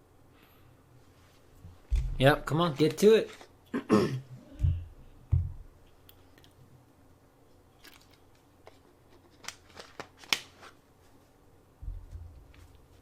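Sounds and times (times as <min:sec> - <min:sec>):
low thump: 0:04.6 - 0:05.6, 0:11.8 - 0:12.5.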